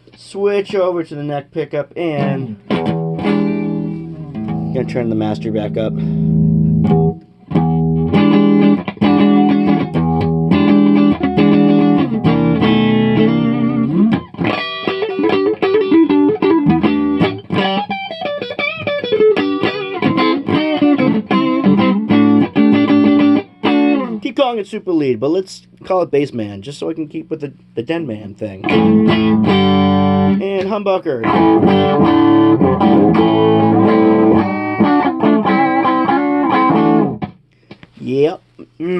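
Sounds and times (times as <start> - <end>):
electric guitar chords: 2.1 - 24.4, 28.6 - 37.8
electric guitar lead with bends: 2.2 - 24.2, 28.6 - 30.5, 31.2 - 37.4.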